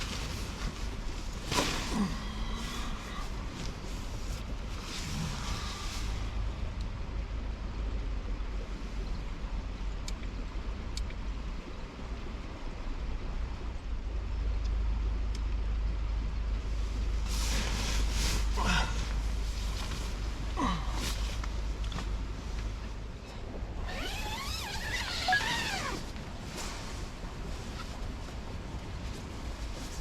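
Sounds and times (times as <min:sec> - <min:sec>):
faint sharp clicks: 0:10.0 - 0:11.2.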